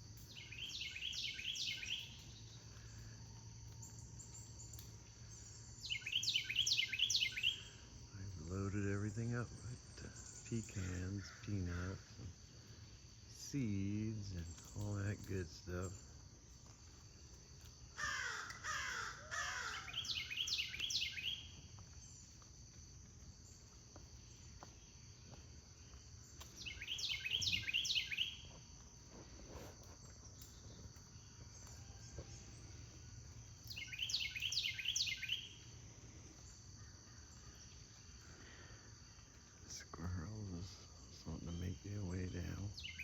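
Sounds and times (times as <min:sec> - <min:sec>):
high-pitched insect chorus: 0:00.0 - 0:43.0
bird harsh repeated calls: 0:05.9 - 0:07.7, 0:18.0 - 0:21.6, 0:26.6 - 0:28.4.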